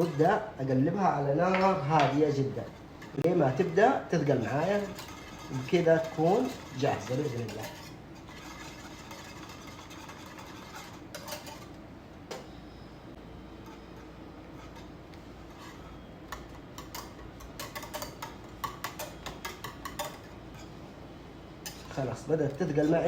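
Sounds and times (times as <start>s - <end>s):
utensil scraping a pot: 0.0s - 0.6s, 1.5s - 11.8s, 13.5s - 20.8s
steady low hum: 0.0s - 23.0s.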